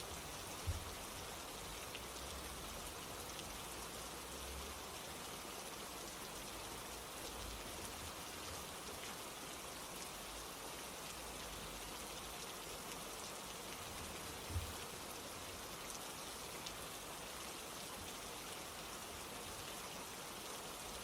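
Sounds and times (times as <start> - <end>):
steady rain: 0.0 - 21.0
soft low thump: 0.6 - 1.1, 14.4 - 14.8.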